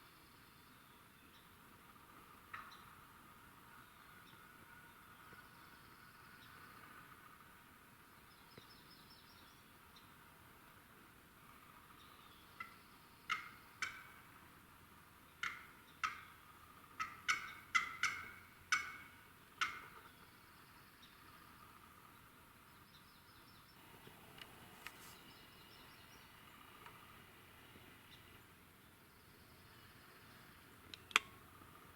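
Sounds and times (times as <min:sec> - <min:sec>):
faint songbird chirps: 0:00.0 - 0:31.9
turkey calling: 0:12.6 - 0:14.5, 0:15.3 - 0:20.2.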